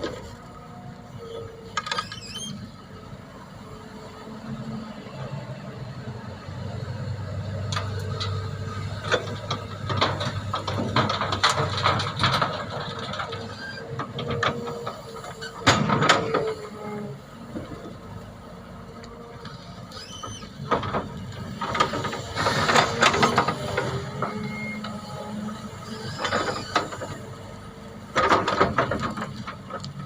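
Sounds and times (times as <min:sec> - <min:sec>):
excavator engine running: 0:00.0 - 0:30.0
thin squeal: 0:24.3 - 0:25.2.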